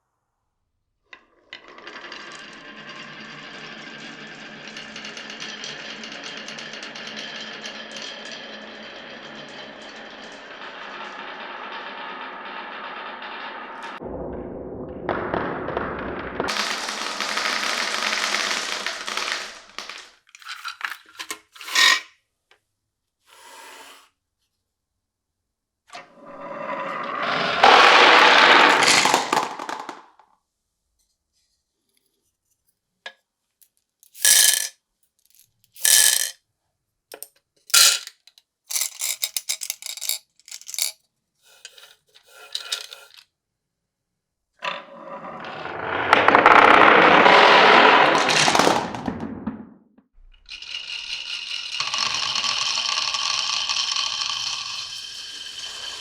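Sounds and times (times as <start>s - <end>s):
marbles rolling rumble: 1.4s - 21.0s, 26.1s - 30.3s, 34.1s - 34.7s, 35.8s - 36.4s, 37.7s - 38.1s, 38.7s - 40.9s, 41.5s - 43.2s, 44.6s - 49.8s, 50.4s - 56.0s
marbles clacking on wood: 16.4s - 22.0s, 27.3s - 30.2s, 34.0s - 34.7s, 35.8s - 36.4s, 37.1s - 41.0s, 44.7s - 49.4s, 50.5s - 56.0s.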